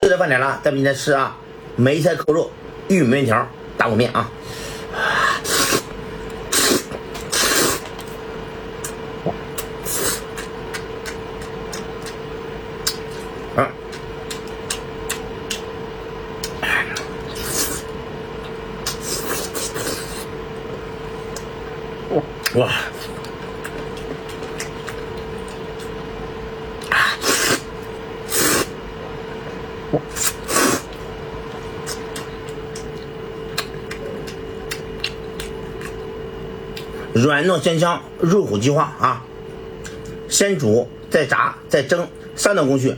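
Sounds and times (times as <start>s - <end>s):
electrical hum: 0.0s - 42.9s
close eating sounds: 4.3s - 40.3s
loud slurping: 5.2s - 8.0s, 9.6s - 10.5s, 16.4s - 17.9s, 18.9s - 20.3s, 26.8s - 28.8s, 30.0s - 31.0s.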